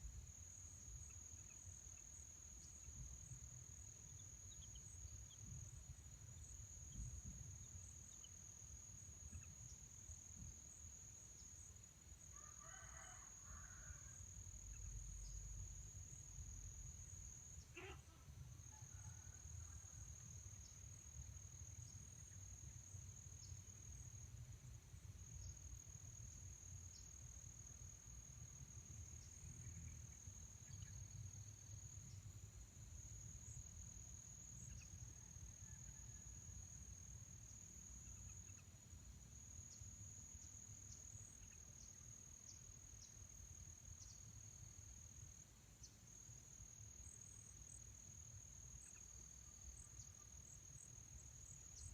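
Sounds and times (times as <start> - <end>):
high-pitched insect trill: 0.0 - 51.9.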